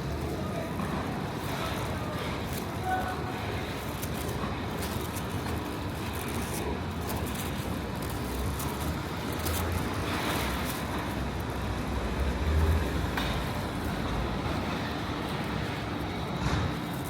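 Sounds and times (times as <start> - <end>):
road traffic noise: 0.0 - 17.0.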